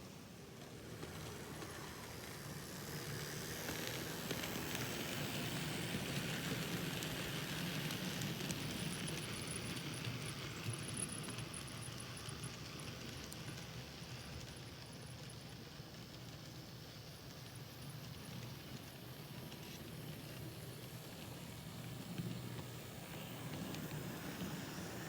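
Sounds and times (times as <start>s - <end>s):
model train motor and wheels rumbling: 0.0s - 25.0s.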